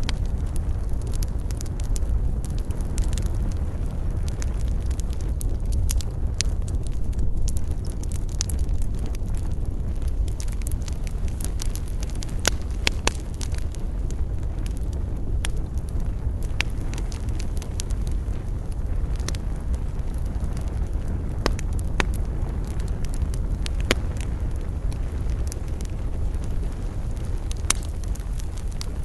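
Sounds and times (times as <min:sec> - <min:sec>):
campfire crackling and popping: 0:00.0 - 0:29.0
steady low rumble: 0:00.0 - 0:29.0.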